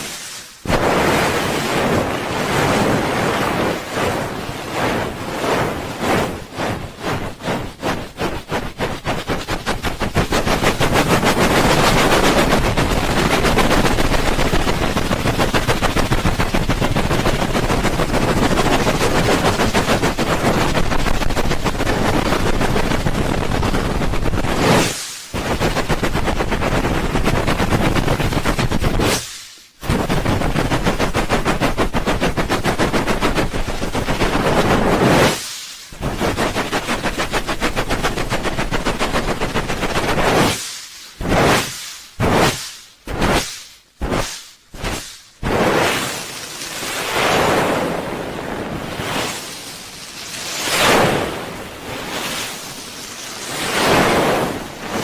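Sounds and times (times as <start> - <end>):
hands rubbing microphone: 4.8 - 35.4, 36.0 - 46.4.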